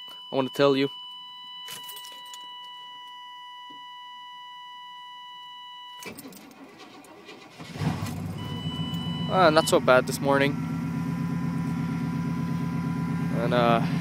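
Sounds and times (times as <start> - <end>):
engine starter cranking: 6.0 - 9.9
engine starting and running: 6.0 - 14.0
steady high tone: 8.3 - 14.0.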